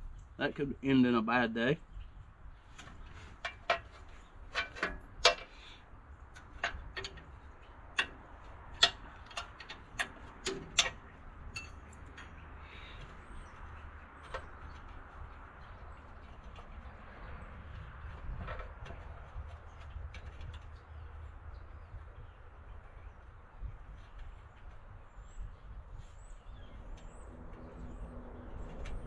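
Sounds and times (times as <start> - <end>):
hand tools clicking and knocking: 2.8 - 17.0.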